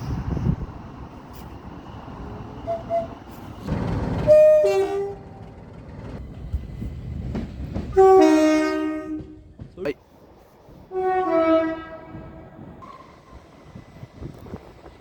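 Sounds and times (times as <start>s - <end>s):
train rumbling: 0.0s - 15.0s
train horn blasts: 4.2s - 5.4s, 8.0s - 9.5s, 10.9s - 13.1s.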